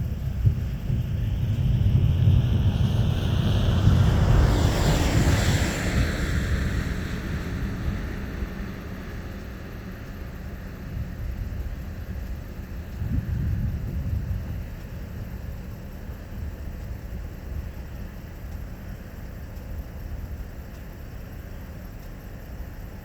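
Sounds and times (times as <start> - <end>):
propeller plane passing: 0.0 - 15.6.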